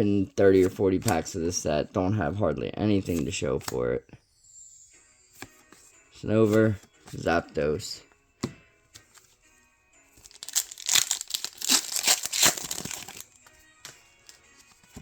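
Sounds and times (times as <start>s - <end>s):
faint background music: 0.0s - 15.0s
foil wrapper crinkling and tearing: 10.2s - 13.3s.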